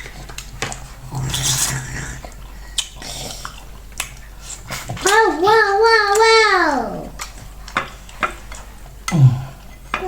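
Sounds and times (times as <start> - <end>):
slurping and chewing: 0.0 - 5.1.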